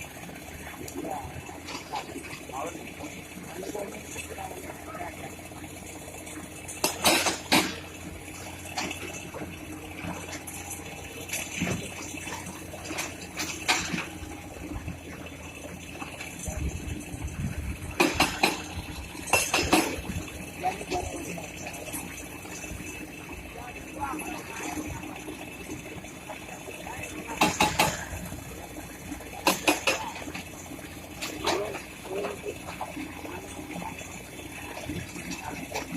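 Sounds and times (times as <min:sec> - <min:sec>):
low steady hum: 0:00.0 - 0:35.9
metal clanks and knocks: 0:06.2 - 0:14.8, 0:15.9 - 0:23.0, 0:27.2 - 0:28.4, 0:29.3 - 0:33.2.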